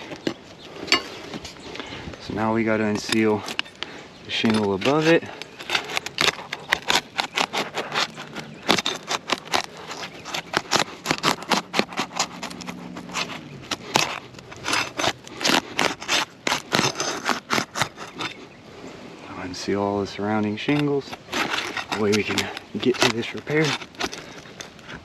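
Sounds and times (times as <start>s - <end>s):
scrapes clicks and crackles: 2.7s - 18.4s, 20.6s - 25.0s
metal bar prying shingles: 2.8s - 18.4s, 20.7s - 25.0s.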